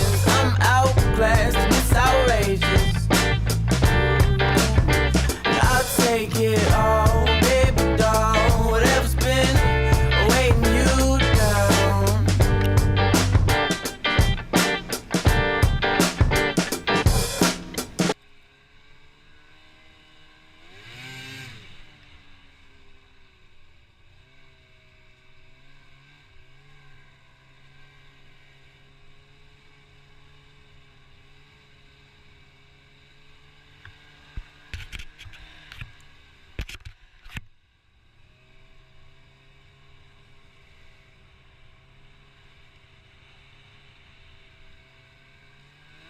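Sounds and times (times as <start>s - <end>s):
distant snowmobile engine: 0.0s - 46.0s.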